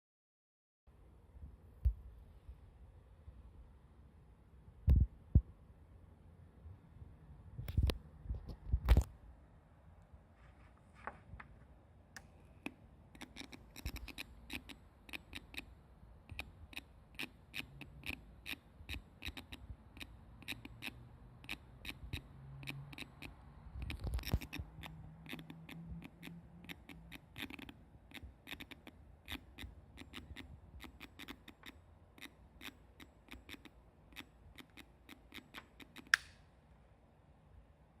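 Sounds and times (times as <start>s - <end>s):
speaker clicking and crackling: 16.3s - 36.3s.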